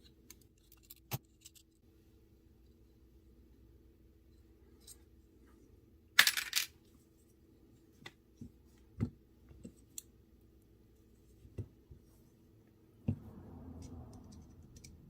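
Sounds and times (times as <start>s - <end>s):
small metal parts clinking: 0.3s - 1.8s, 6.2s - 6.7s.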